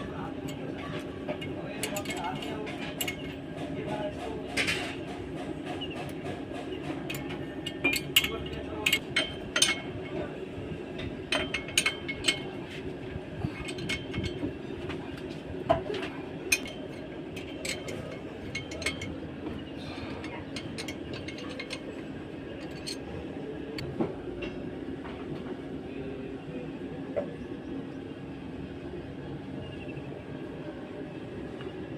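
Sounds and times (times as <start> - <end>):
steady mechanical hum: 0.0 - 31.9
metallic clinks and taps: 11.3 - 12.6, 13.5 - 14.6, 15.7 - 22.0, 22.6 - 23.1.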